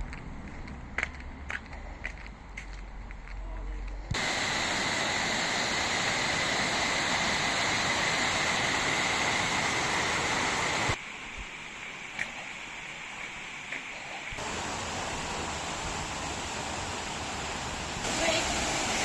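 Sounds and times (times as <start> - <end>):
flowing water: 4.1 - 19.0
waterfall rushing: 4.2 - 11.0, 14.4 - 19.0.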